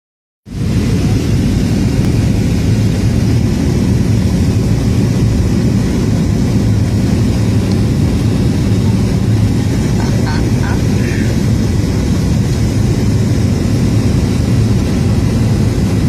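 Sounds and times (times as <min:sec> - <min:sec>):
airplane droning in flight: 0:00.4 - 0:16.0.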